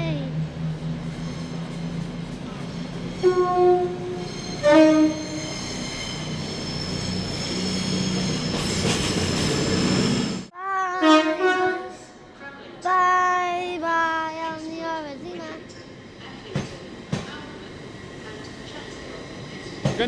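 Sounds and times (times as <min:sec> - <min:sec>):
train rumbling past: 0:00.0 - 0:10.5, 0:11.4 - 0:20.0
two-tone train horn: 0:03.2 - 0:05.5, 0:11.0 - 0:12.2.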